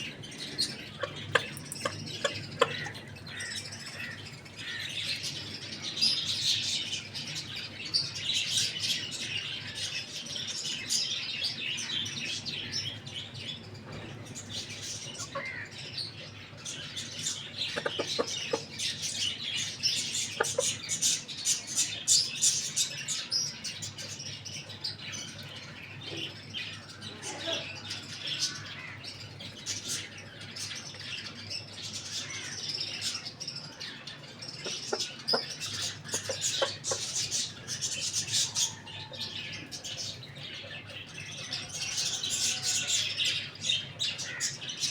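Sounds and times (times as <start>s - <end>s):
lower bird calls: 0.0s - 5.6s
flock of small birds chirping: 0.0s - 44.9s.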